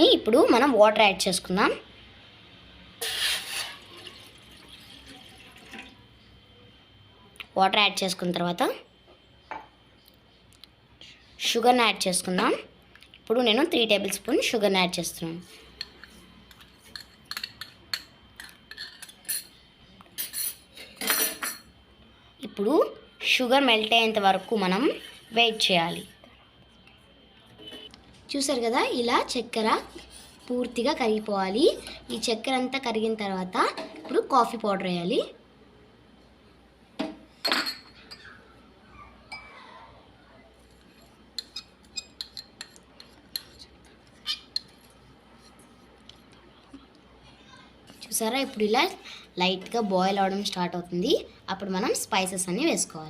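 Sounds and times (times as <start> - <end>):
metal spoon clinking on saucepan: 15.8 - 19.5, 41.4 - 43.6.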